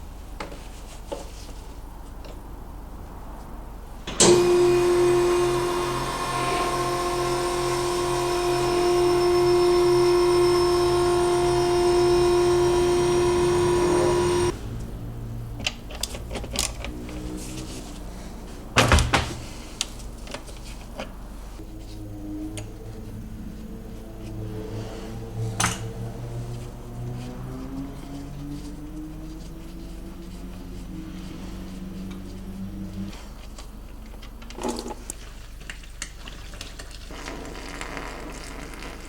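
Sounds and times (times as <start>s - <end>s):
small electric motor humming: 4.2s - 14.6s.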